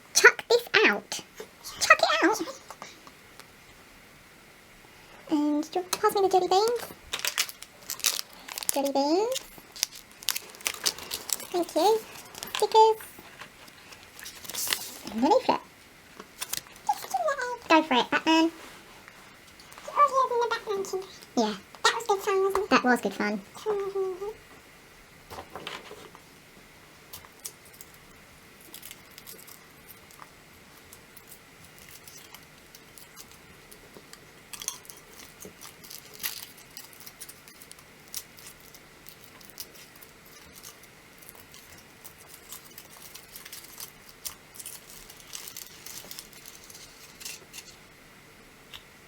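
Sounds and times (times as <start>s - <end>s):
faint steady hum: 0.0s - 49.0s
foil wrapper crinkling: 5.7s - 21.3s, 27.1s - 47.8s.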